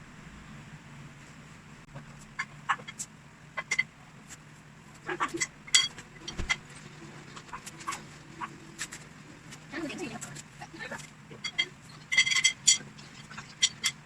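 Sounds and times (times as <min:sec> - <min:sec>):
low steady hum: 0:00.0 - 0:14.0
objects clicking and clinking: 0:11.4 - 0:14.0.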